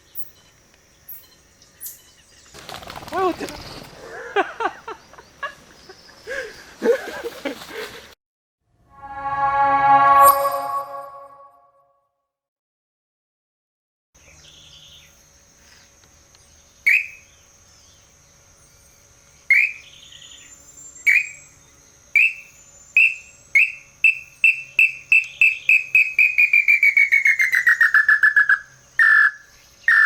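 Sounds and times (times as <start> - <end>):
high insect drone: 14.2 - 30.0
bird-call whistle notes: 16.9 - 17.2, 19.5 - 20.0, 21.0 - 21.5, 22.2 - 30.0.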